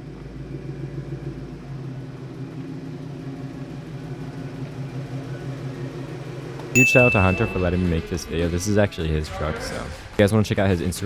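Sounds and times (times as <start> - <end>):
low mechanical hum: 0.0 - 7.5.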